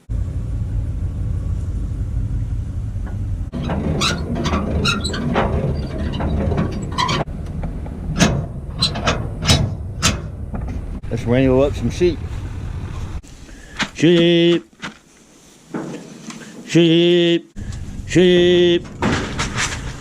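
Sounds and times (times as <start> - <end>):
vehicle engine rumble: 0.0 - 16.6, 17.5 - 20.0
clattering knocks and rattles: 2.8 - 11.1, 15.7 - 16.4, 18.8 - 20.0.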